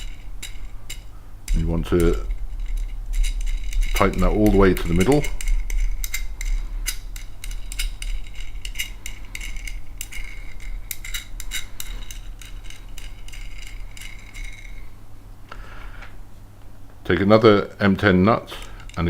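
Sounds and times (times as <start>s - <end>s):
nut spinning on threaded rod: 0.0s - 15.0s.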